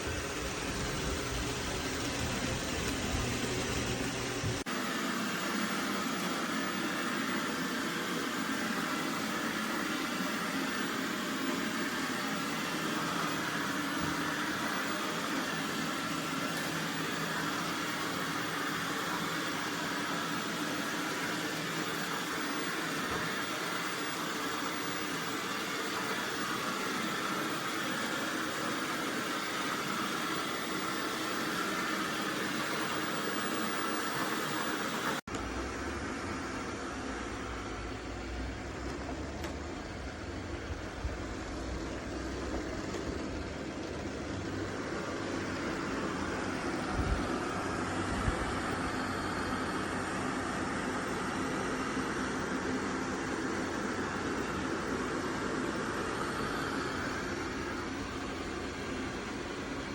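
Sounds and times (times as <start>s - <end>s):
robot vacuum whirring: 0.0s - 35.4s.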